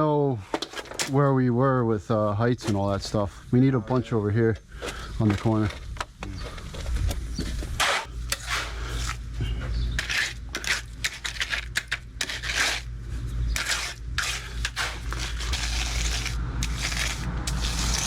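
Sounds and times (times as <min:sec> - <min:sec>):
shovels scraping wet concrete: 0:07.8 - 0:09.3, 0:10.0 - 0:12.9, 0:13.5 - 0:18.0.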